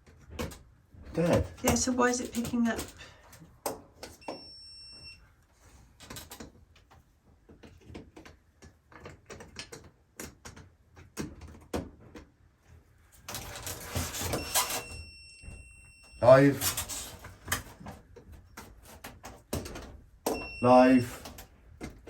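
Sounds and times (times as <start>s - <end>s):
voltage tester beep: 4.2s - 5.2s, 20.3s - 21.1s.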